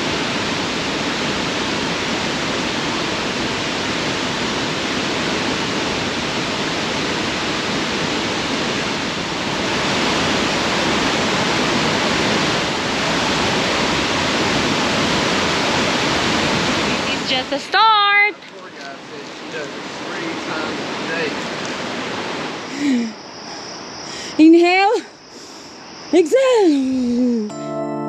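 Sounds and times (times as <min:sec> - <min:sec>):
waterfall pouring: 0:18.6 - 0:22.6.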